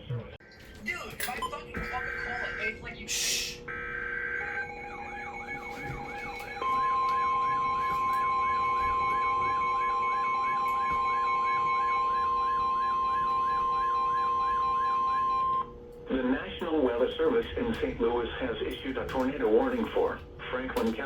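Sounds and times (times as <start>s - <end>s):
high alarm tone: 1.2s - 15.8s
warbling electronic alert tone: 3.7s - 15.6s.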